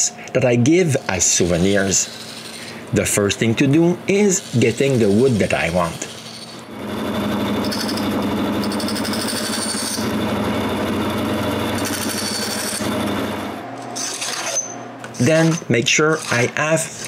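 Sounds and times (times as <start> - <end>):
electric saw cutting wood: 4.3 - 14.4.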